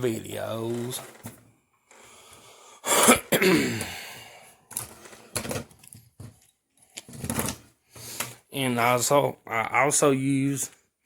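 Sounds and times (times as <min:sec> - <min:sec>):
man clearing throat: 0:02.9 - 0:04.0.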